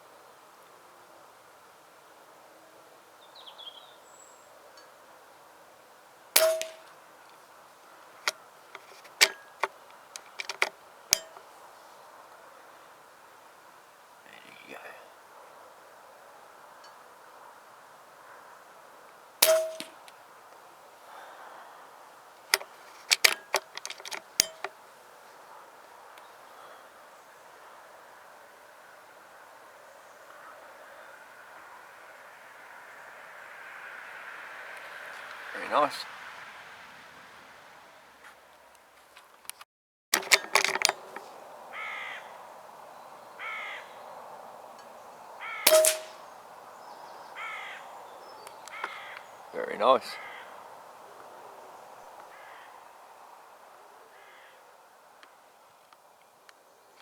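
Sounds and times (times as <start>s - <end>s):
air rifle shot: 6.4s - 6.9s, 19.4s - 20.0s, 45.7s - 46.3s
metallic clicks of rifle cocking: 6.4s - 7.0s, 8.2s - 11.5s, 19.4s - 20.2s, 22.5s - 24.8s, 40.2s - 41.3s, 45.7s - 46.2s
crow cawing: 41.7s - 42.6s, 43.3s - 44.1s, 45.4s - 45.7s, 47.3s - 49.4s, 50.1s - 50.7s, 52.2s - 53.0s, 54.1s - 54.7s.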